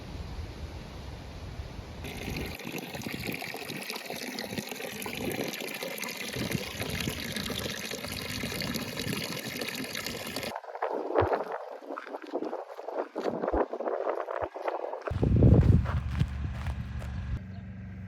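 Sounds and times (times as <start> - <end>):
running water rushing: 2.0 - 15.0.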